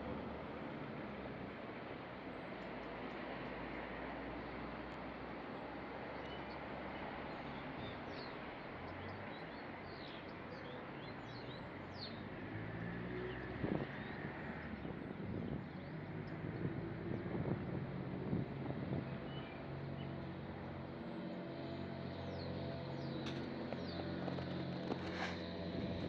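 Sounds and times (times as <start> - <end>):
small birds chirping: 6.1 - 12.3, 19.0 - 26.0.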